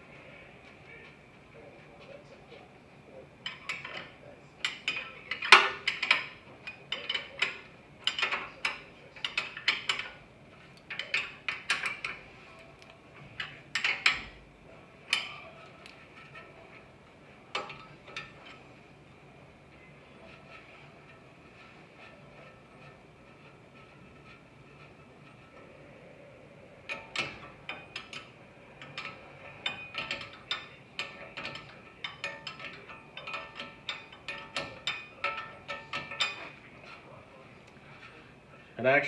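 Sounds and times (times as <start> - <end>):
metal tools clinking: 3.4 - 14.4, 26.7 - 39.0.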